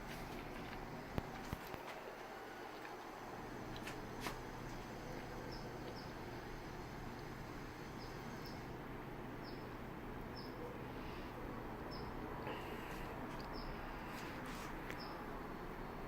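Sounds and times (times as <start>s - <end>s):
outdoor hum and hiss: 0.0s - 16.0s
small bird chirping: 9.4s - 9.7s, 13.5s - 13.8s, 15.0s - 15.2s.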